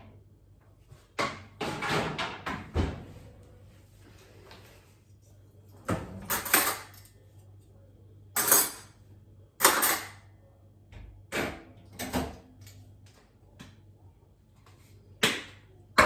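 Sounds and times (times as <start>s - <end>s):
kitchen items clattering and rustling: 1.0s - 3.4s, 5.6s - 7.2s, 8.4s - 9.0s, 9.6s - 10.2s
faint low hum: 2.8s - 16.0s.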